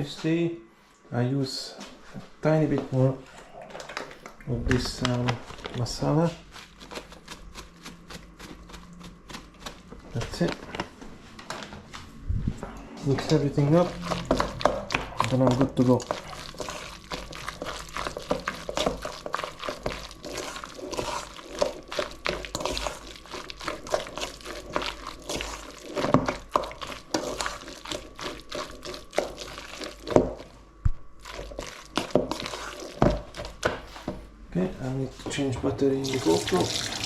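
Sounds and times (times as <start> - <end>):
wet mix squishing in bowl: 2.1 - 37.0.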